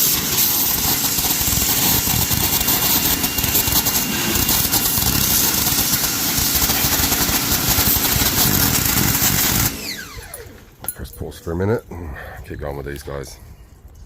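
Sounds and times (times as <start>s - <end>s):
pressure washer spraying water: 0.0s - 10.5s.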